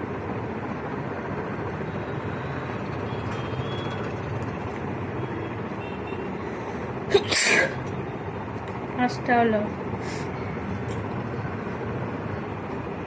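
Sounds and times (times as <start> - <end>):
steady background noise: 0.0 - 13.0
person sneezing: 7.1 - 7.8.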